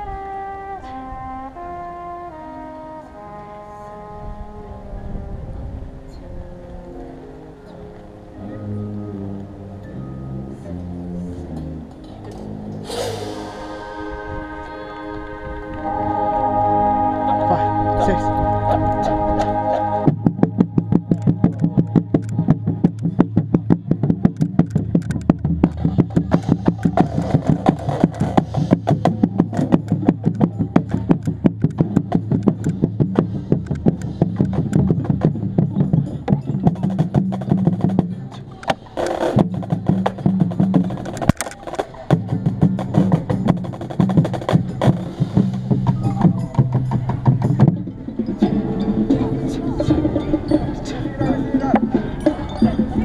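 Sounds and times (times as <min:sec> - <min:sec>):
held low brass notes: 0:00.0 - 0:53.0
bass drum and percussion strokes: 0:10.5 - 0:16.0, 0:18.4 - 0:53.0.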